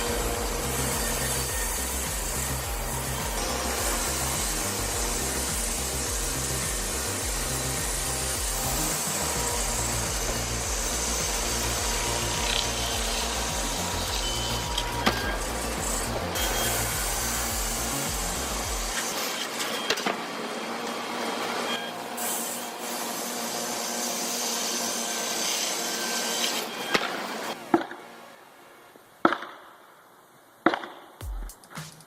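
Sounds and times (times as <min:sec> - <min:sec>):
background music with low beat: 0:00.0 - 0:19.0, 0:30.8 - 0:32.0
saw cutting wood: 0:00.0 - 0:28.2.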